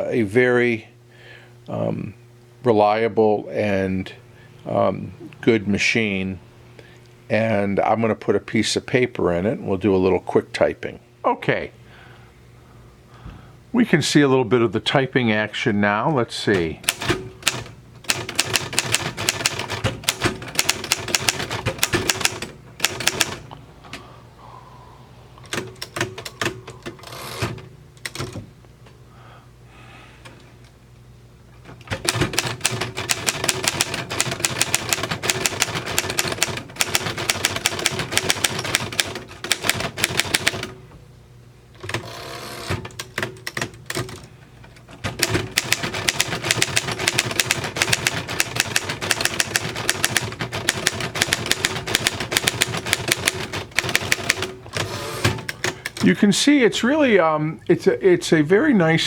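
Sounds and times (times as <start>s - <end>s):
manual typewriter typing: 16.5s - 23.4s, 25.5s - 28.4s, 31.8s - 40.8s, 41.8s - 44.3s, 44.9s - 56.2s.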